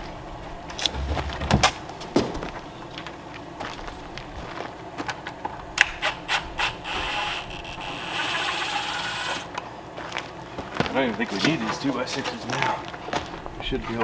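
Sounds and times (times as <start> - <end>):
small power tool whining: 5.8 - 9.5.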